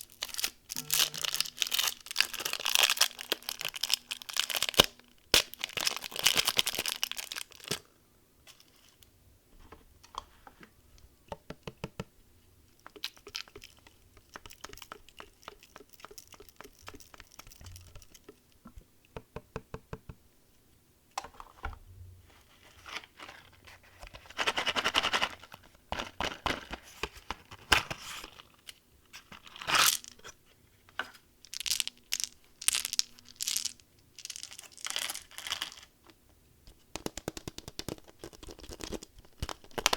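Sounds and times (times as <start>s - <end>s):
candy packaging crinkling: 0.0s - 7.9s, 12.8s - 18.4s, 22.5s - 30.3s, 31.5s - 35.9s, 37.0s - 39.9s.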